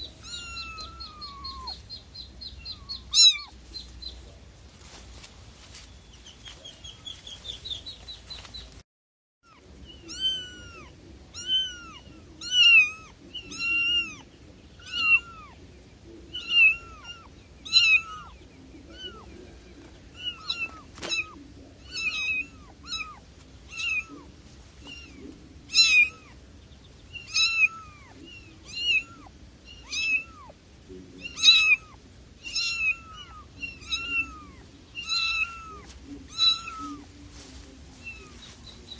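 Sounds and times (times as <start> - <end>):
cat mewing: 0.2 - 1.8, 2.7 - 3.6, 9.5 - 15.6, 16.4 - 19.2, 20.2 - 26.4, 27.2 - 30.6, 31.2 - 37.0.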